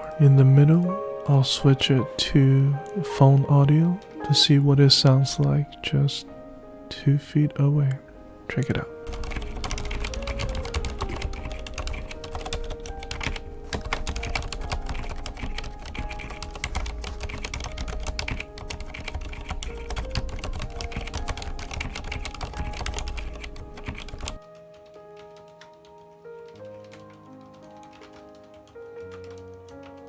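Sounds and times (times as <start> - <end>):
fast typing on mechanical keyboard: 8.7 - 30.0.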